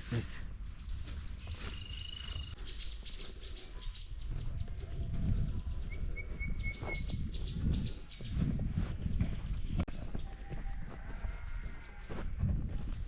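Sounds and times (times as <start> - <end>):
bird whistles and chirps: 5.9 - 7.4.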